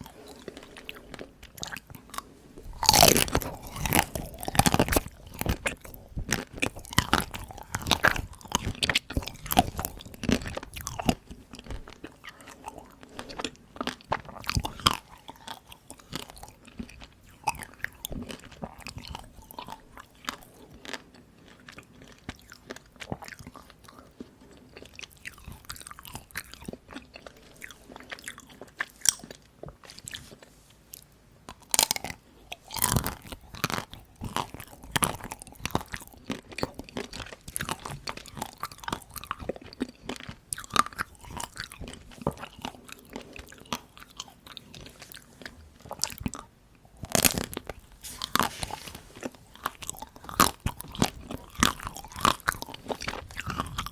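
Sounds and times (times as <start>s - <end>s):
crunching and chewing chocolate: 0.0s - 53.9s.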